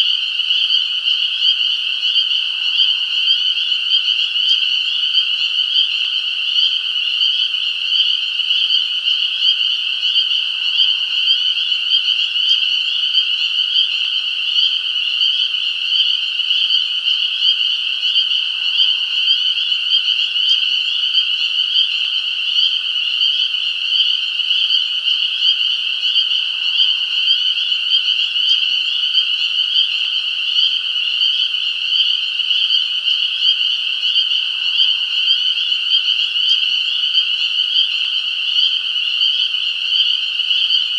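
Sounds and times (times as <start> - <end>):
chorus of small frogs calling: 0.0 - 40.9.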